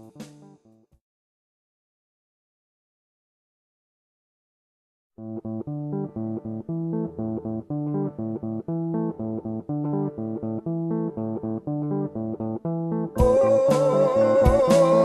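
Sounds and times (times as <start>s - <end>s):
plucked guitar and bass riff: 5.2s - 15.0s.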